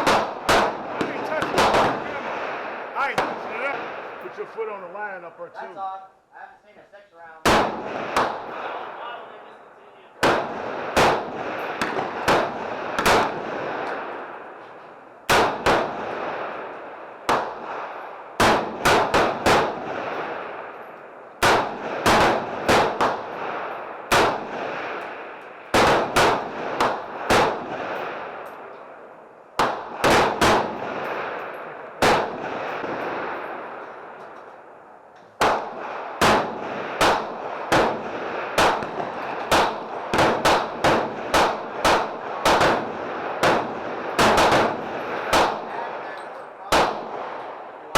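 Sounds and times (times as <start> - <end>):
rapid gunshots: 0.0 - 4.1, 7.4 - 8.9, 10.2 - 13.9, 15.3 - 16.6, 17.2 - 20.7, 21.4 - 25.1, 25.7 - 28.4, 29.6 - 31.4, 32.0 - 33.4, 35.4 - 45.9, 46.6 - 47.5
gunshot echo: 0.0 - 4.4, 7.4 - 9.0, 10.2 - 14.6, 15.3 - 28.7, 29.6 - 34.6, 35.4 - 47.7.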